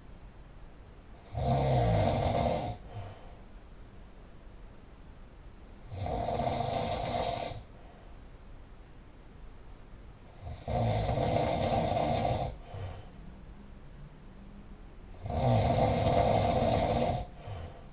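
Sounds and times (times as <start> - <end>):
quiet breathing: 1.1 - 3.7, 5.8 - 8.4, 10.2 - 17.9
person snoring loudly: 1.2 - 3.0, 5.9 - 7.7, 10.4 - 13.0, 15.1 - 17.8.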